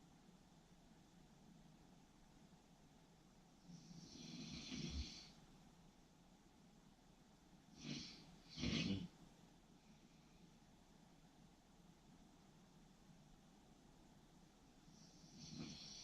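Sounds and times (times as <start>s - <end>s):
person snoring: 3.7s - 5.3s, 7.8s - 9.1s, 15.0s - 16.0s.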